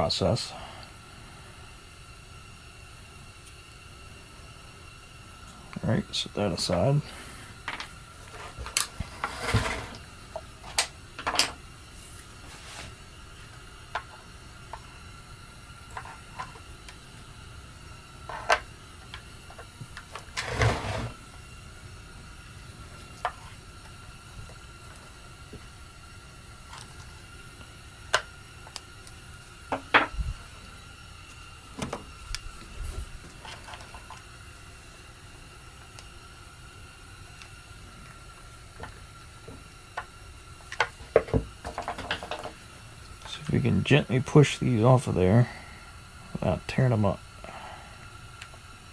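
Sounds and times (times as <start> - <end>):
faint steady high hum: 0.0 - 48.9
scraping rustle: 8.3 - 10.1, 20.2 - 21.2.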